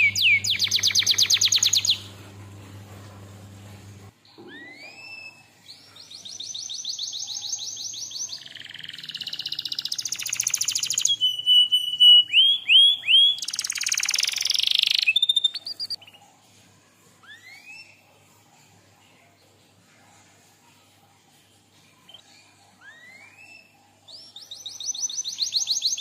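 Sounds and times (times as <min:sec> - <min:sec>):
canary singing: 0:00.0 - 0:02.2, 0:04.3 - 0:16.3, 0:22.1 - 0:26.0.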